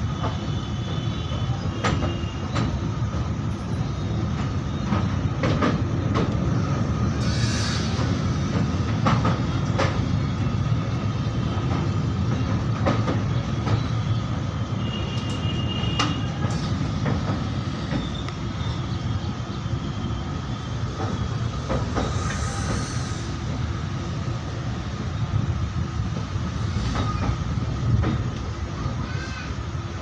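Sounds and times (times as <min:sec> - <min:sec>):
train rumbling over bridge: 0:00.0 - 0:30.0
high wheel squeal: 0:07.2 - 0:08.2, 0:19.9 - 0:23.6.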